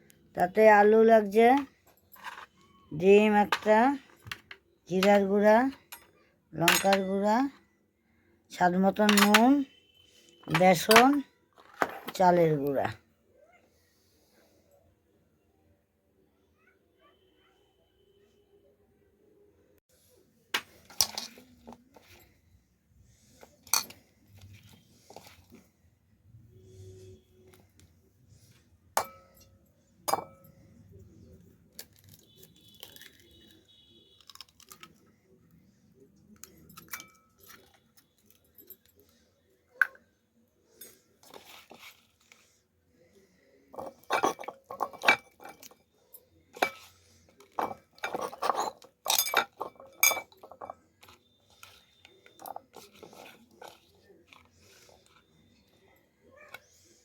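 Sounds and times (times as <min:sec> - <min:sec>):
utensils clinking against a bowl: 0:03.4 - 0:07.5, 0:08.9 - 0:09.6, 0:10.4 - 0:12.2, 0:20.6 - 0:22.3, 0:23.6 - 0:25.4, 0:29.0 - 0:30.6, 0:36.4 - 0:39.1, 0:43.7 - 0:55.2
utensils scraping a bowl: 0:46.6 - 0:55.2.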